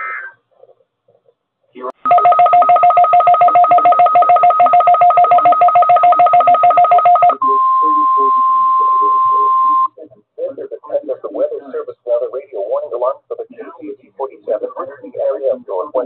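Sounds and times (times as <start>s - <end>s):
pulsing two-tone beeping: 2.1s - 9.9s
steady alarm tone: 2.1s - 9.9s.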